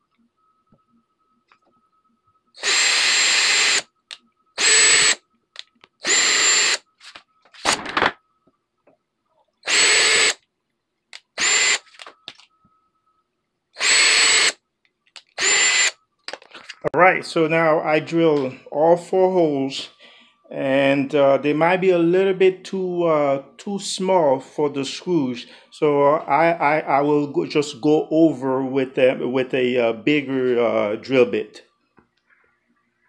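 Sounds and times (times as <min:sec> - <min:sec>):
cordless drill whining: 0:02.6 - 0:03.9, 0:04.6 - 0:05.2, 0:06.0 - 0:07.0, 0:09.6 - 0:10.4, 0:11.2 - 0:12.1, 0:13.8 - 0:14.6, 0:15.2 - 0:16.0.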